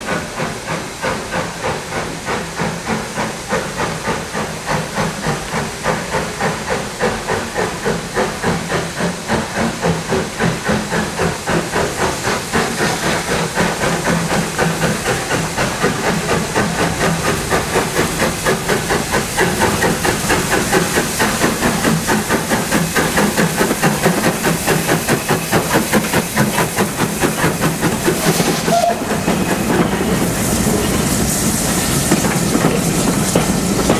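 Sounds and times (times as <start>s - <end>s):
steam hissing: 0.0s - 33.9s
steam locomotive exhaust beating: 0.0s - 33.9s.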